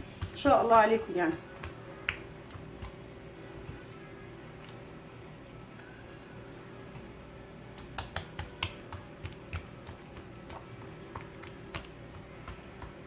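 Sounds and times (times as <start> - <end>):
hands tapping dough on marble: 0.0 - 3.0, 7.8 - 13.0.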